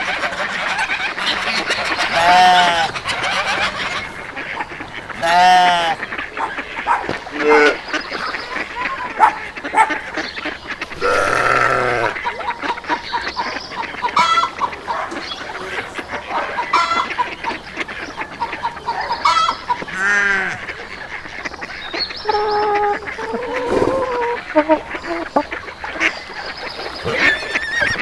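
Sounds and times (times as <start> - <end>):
fowl calling: 0.0 - 28.0.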